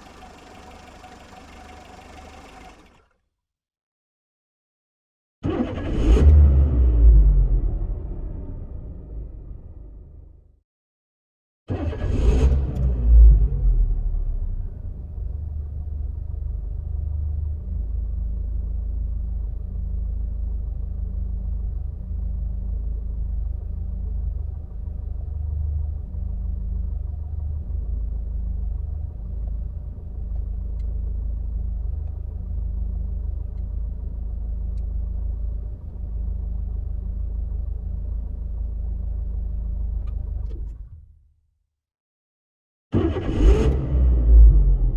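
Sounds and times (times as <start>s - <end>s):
car engine idling: 0.0s - 3.2s, 15.1s - 40.6s.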